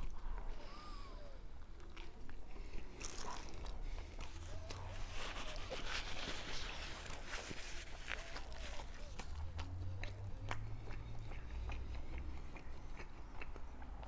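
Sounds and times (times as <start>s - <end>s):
chewing and biting sandwich: 0.0s - 14.0s.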